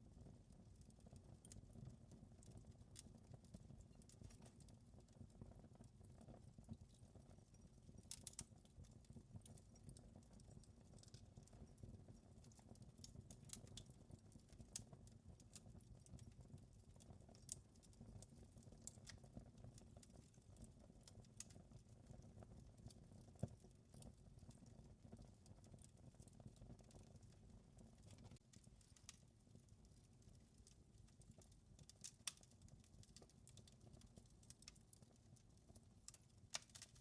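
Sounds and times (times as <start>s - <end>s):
wood fire crackling: 0.0s - 37.0s.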